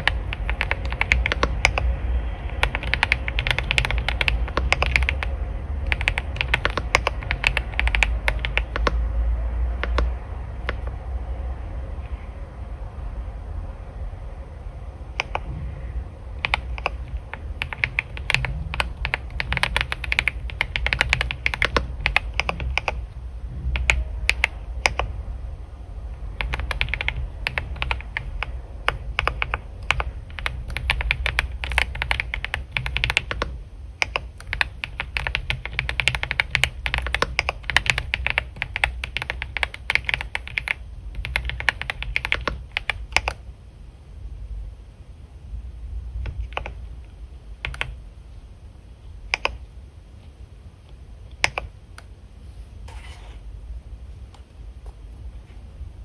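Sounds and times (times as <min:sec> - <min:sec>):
computer keyboard typing: 0:00.0 - 0:09.1, 0:09.7 - 0:11.0, 0:15.1 - 0:15.5, 0:16.3 - 0:25.2, 0:26.2 - 0:43.5, 0:46.2 - 0:48.0, 0:49.3 - 0:49.7, 0:51.3 - 0:52.1
steady low rumble: 0:00.0 - 0:56.0.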